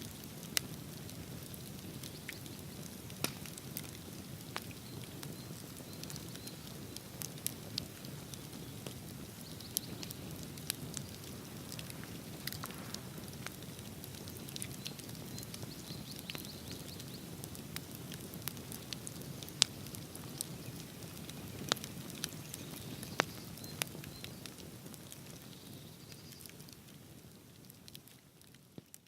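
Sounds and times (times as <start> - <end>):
bonfire flame rushing: 0.0 - 16.4, 17.2 - 23.3
fire crackles and pops: 0.0 - 29.0.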